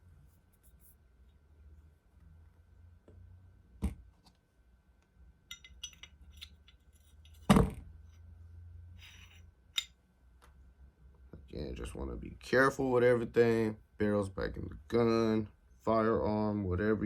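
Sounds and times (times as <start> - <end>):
metal part knocking: 5.5 - 6.7
light metallic clinks: 5.5 - 7.4
pistol parts clicking: 5.5 - 7.4.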